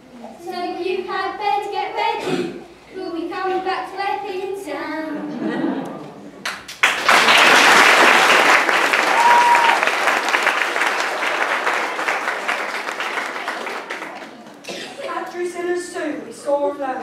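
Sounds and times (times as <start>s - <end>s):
audience applauding: 6.4s - 14.6s.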